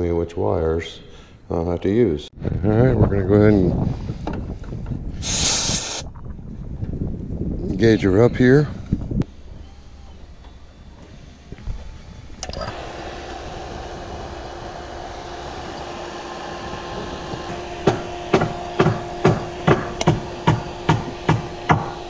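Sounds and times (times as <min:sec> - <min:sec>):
vacuum pump humming: 0:09.2 - 0:22.0.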